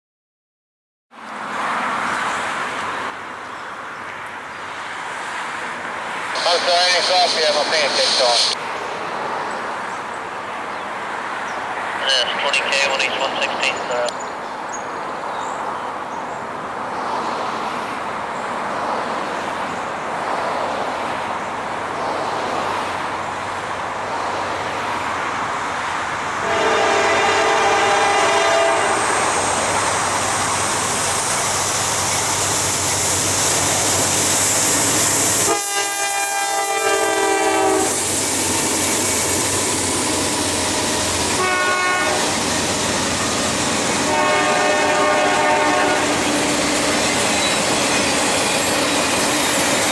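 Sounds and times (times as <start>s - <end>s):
locomotive rumble: 6.4s - 8.6s
train air horn blasts: 26.4s - 29.3s, 35.4s - 38.0s, 41.3s - 42.3s, 44.0s - 46.2s.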